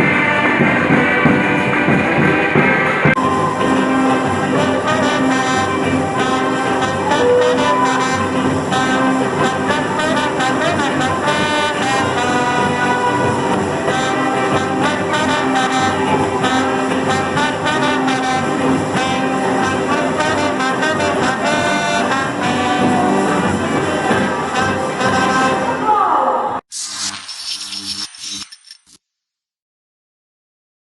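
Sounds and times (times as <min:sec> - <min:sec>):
orchestra with brass playing: 0:03.1 - 0:25.9.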